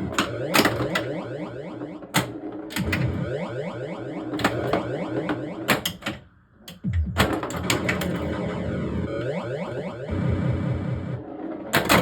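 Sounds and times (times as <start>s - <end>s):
pinball flippers clacking: 0.0s - 3.1s, 4.3s - 8.4s, 11.7s - 12.0s
electronic sound effects: 0.0s - 6.0s, 6.7s - 11.4s.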